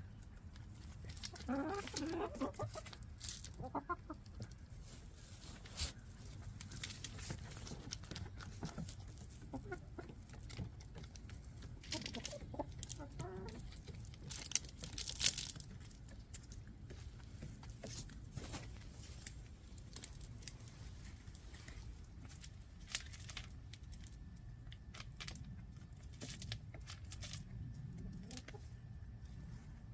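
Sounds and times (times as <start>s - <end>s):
hens clucking softly: 0.1s - 6.4s, 7.2s - 14.4s, 27.5s - 29.9s.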